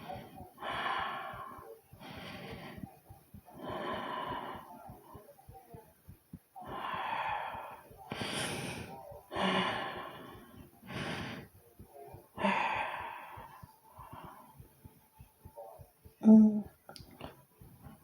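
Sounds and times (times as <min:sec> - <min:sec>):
heavy breathing: 0:00.0 - 0:05.8, 0:06.6 - 0:15.6
heartbeat thumps: 0:00.0 - 0:18.0.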